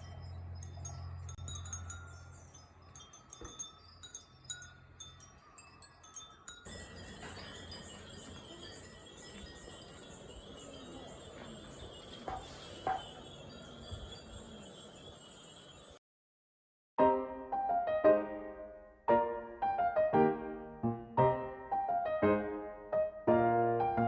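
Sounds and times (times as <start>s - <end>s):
wind chimes tinkling: 0.0s - 16.0s.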